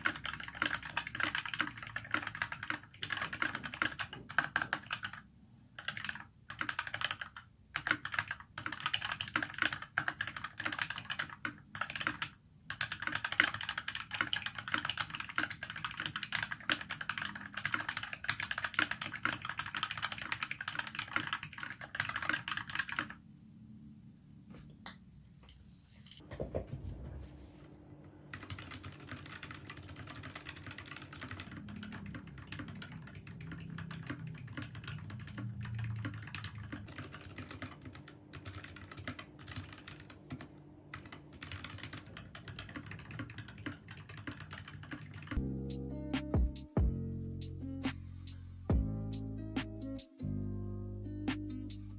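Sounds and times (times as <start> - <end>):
fast typing on mechanical keyboard: 0.0 - 5.2, 5.8 - 23.2, 28.3 - 45.4.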